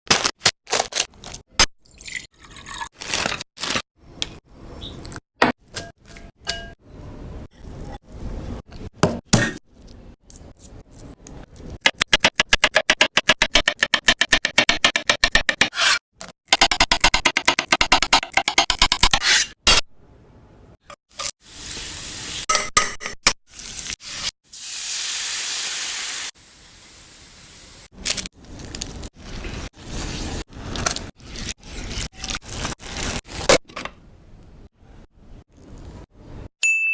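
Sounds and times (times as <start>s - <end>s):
rapid knife chopping: 11.9s - 19.2s.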